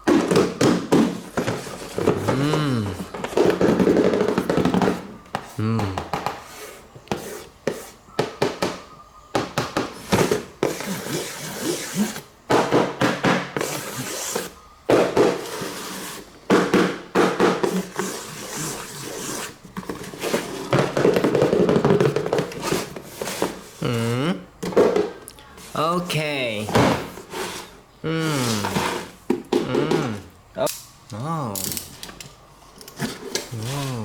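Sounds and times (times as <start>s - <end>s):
plastic and cardboard rustling: 0.0s - 24.0s, 26.6s - 30.4s, 31.1s - 34.0s.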